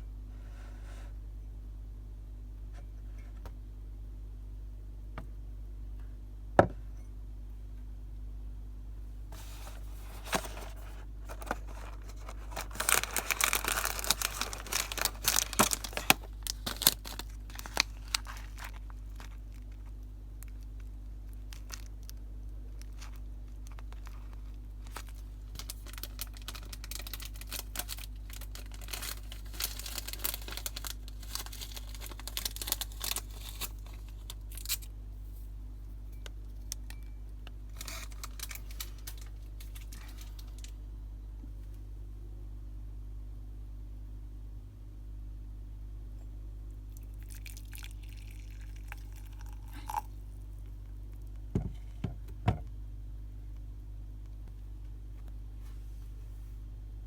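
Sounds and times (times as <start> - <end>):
steady low hum: 0.0 - 57.0
packaging torn and crinkled: 9.4 - 34.9, 37.7 - 40.8.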